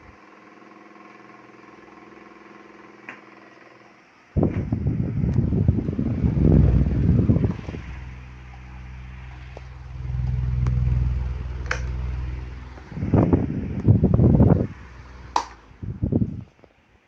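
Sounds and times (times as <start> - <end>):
electric fan motor hum: 0.0 - 16.6
sharp clicks: 15.3 - 15.6.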